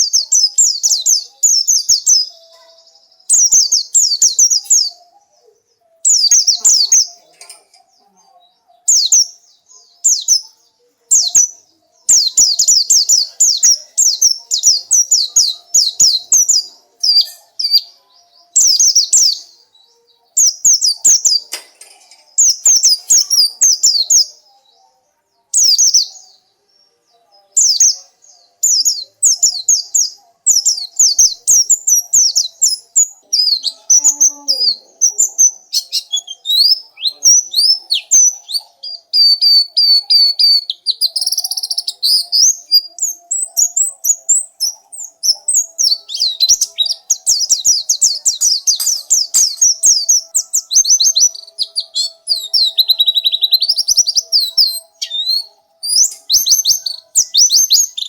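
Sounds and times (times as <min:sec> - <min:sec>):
bird twittering: 0:28.6 - 0:58.0.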